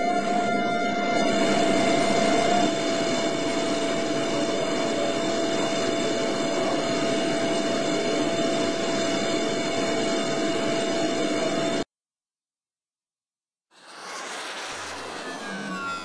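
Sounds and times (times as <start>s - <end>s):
milling machine whine: 0.0s - 11.8s, 13.8s - 16.0s
cutting hiss: 13.8s - 16.0s.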